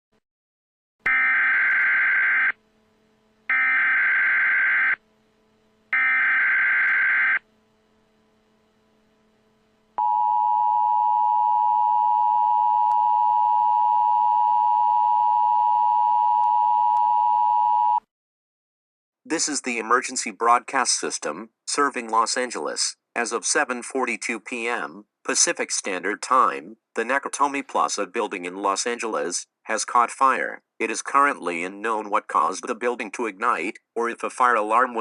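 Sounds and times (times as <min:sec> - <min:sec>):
two-tone attention signal: 0:10.0 - 0:18.0.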